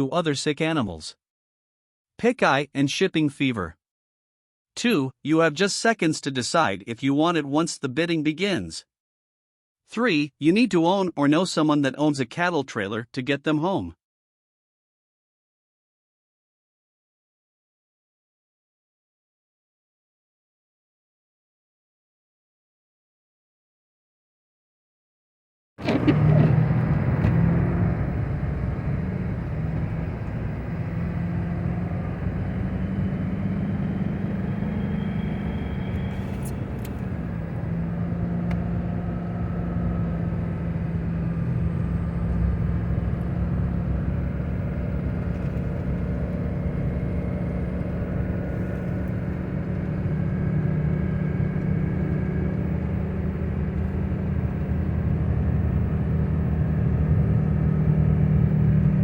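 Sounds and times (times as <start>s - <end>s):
road noise: 25.8s - 59.0s
vehicle engine hum: 25.8s - 59.0s.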